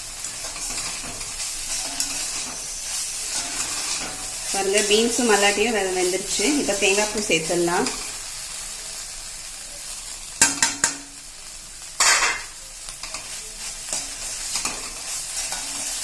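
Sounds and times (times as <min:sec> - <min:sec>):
utensil scraping pan: 0:00.0 - 0:08.1, 0:12.0 - 0:16.0
stir-fry sizzling in pan: 0:00.0 - 0:16.0.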